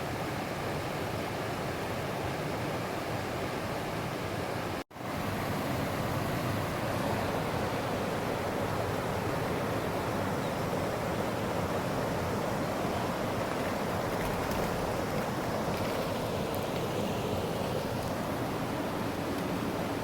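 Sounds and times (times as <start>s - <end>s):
creek water flowing: 5.0s - 20.0s.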